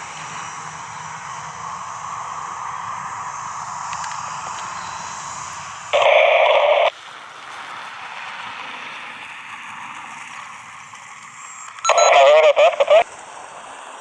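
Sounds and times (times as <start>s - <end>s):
open-carrier noise burst: 6.0s - 6.9s, 11.8s - 13.1s
radio receiver hiss: 6.0s - 6.9s, 11.8s - 13.0s.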